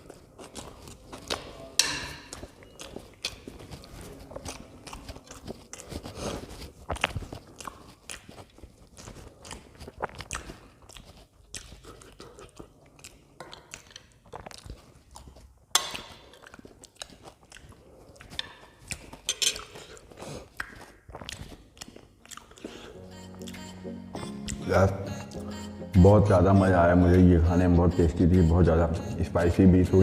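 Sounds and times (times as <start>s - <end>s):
wet smacks and clicks: 0.0s - 23.6s
chewing and mouth sounds: 0.0s - 30.0s.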